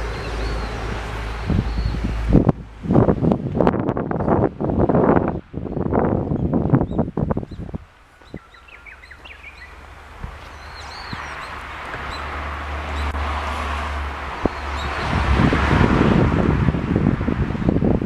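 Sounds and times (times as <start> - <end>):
birds chirping: 0.0 - 2.7, 5.3 - 13.3, 14.3 - 15.3
rushing noise: 0.0 - 18.0
wind gusting on microphone: 0.0 - 18.0.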